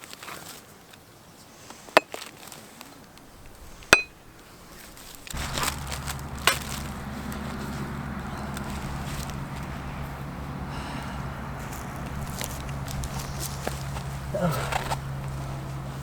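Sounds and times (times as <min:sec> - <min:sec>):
steady low hum: 0:03.2 - 0:16.0.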